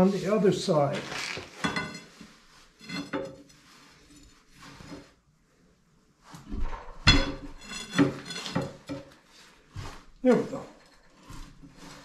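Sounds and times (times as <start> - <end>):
steel plates clanking and scraping: 1.5 - 3.6, 7.0 - 9.1
loud metal clank: 6.6 - 8.2.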